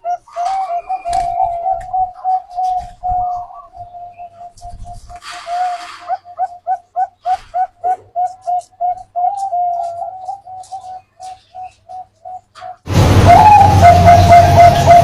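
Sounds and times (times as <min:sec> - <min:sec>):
dove cooing: 0:00.0 - 0:15.0.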